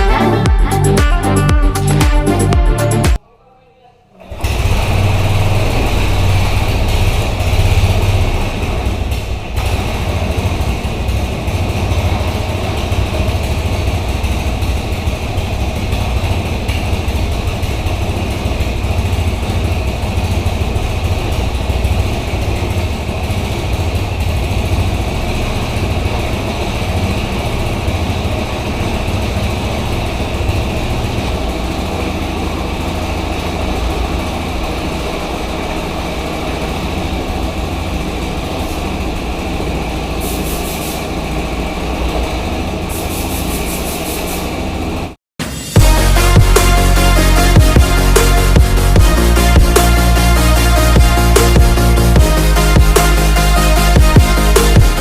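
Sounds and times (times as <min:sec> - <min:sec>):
air compressor running: 0:04.2 - 0:55.0.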